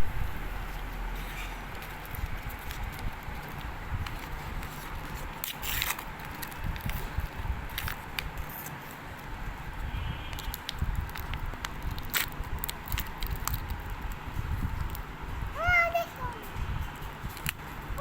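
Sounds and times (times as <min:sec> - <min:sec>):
low rumble: 0:00.0 - 0:04.7.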